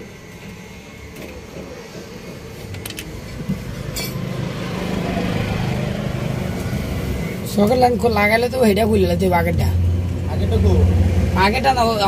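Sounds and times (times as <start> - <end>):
vehicle engine running: 2.8 - 12.0.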